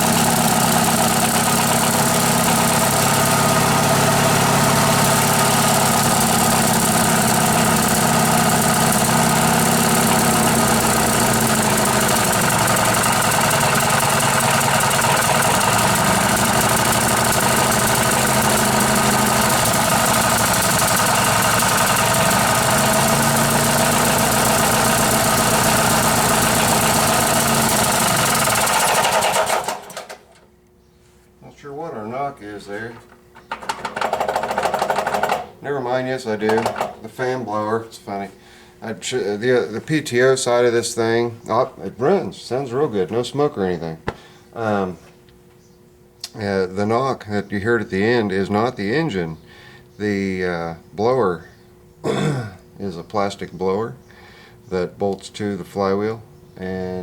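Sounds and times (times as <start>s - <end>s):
cooling blower knock: 0.0s - 30.1s, 36.4s - 37.1s, 44.0s - 44.3s
engine running: 0.0s - 30.4s, 32.7s - 35.6s, 36.4s - 37.2s.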